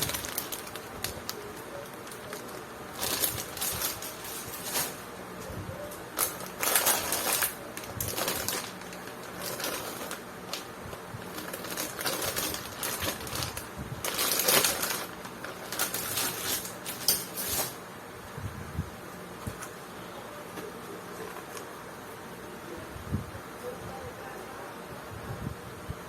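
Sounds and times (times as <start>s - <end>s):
packaging crinkling: 0.0s - 5.1s, 6.1s - 17.8s
faint steady hum: 0.0s - 26.0s.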